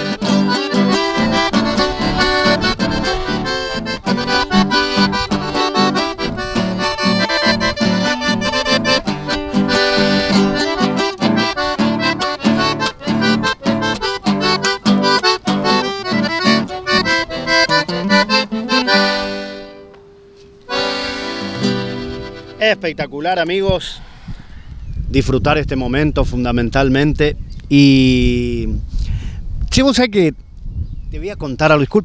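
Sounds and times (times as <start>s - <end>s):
tone: 0.0s - 22.8s
accordion playing rhythmic tune: 0.0s - 23.2s.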